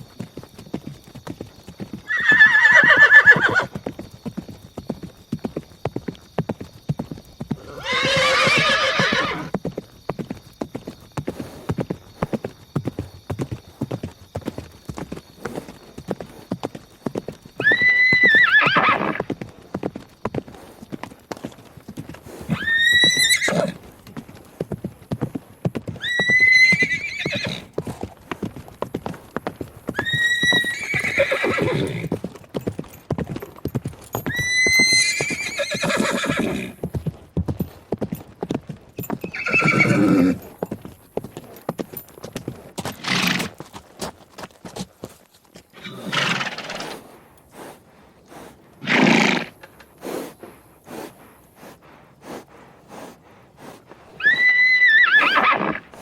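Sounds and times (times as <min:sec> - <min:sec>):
hooves clattering: 0:00.0 - 0:56.0
horse whinnying: 0:02.0 - 0:03.8, 0:07.6 - 0:09.5, 0:17.6 - 0:19.3, 0:22.4 - 0:23.8, 0:25.9 - 0:27.8, 0:29.9 - 0:32.1, 0:34.2 - 0:36.8, 0:39.0 - 0:40.5, 0:42.9 - 0:43.6, 0:45.7 - 0:47.0, 0:48.8 - 0:49.7, 0:54.2 - 0:56.0
horse snorting: 0:22.2 - 0:23.9, 0:39.3 - 0:40.5, 0:42.9 - 0:43.6, 0:45.8 - 0:56.0.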